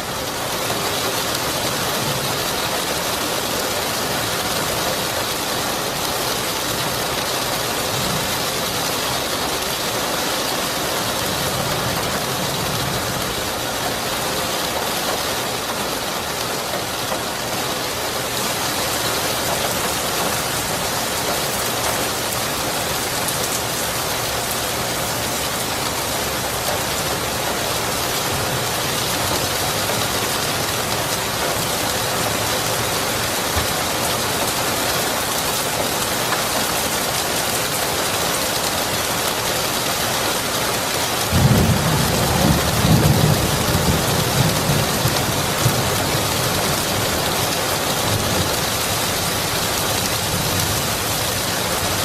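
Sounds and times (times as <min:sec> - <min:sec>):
steady rain falling: 0:00.0 - 0:52.0.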